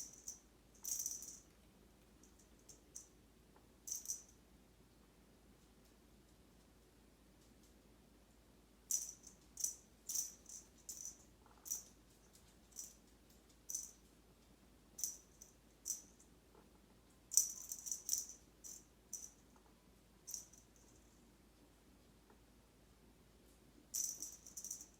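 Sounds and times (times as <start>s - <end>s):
cat toy rattling: 0.0s - 1.4s, 8.9s - 13.0s, 17.3s - 19.4s, 24.0s - 24.9s.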